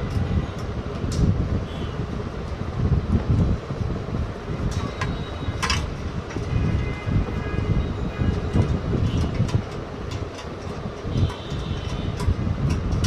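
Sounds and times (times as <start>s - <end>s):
steady low rumble: 0.0s - 13.0s
plastic and metal parts clicking: 4.7s - 6.5s, 8.3s - 13.0s.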